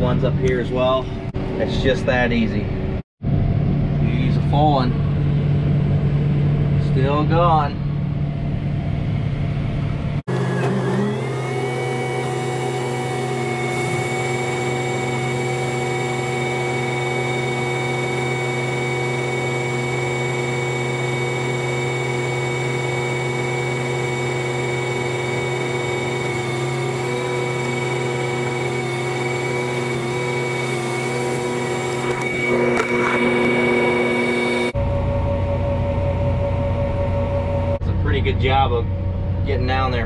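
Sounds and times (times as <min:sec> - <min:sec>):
constant whining tones: 0:00.0 - 0:40.0
tractor engine drone: 0:00.0 - 0:40.0.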